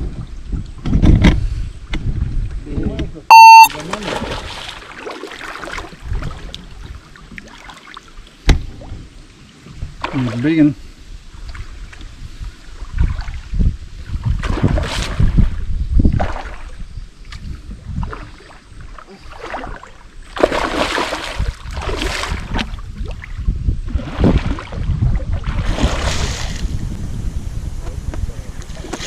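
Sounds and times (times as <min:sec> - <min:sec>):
wind buffeting microphone: 0:00.0 - 0:03.3, 0:05.8 - 0:07.4, 0:11.1 - 0:29.0
water splashing around canoe: 0:00.0 - 0:10.7, 0:11.3 - 0:26.9.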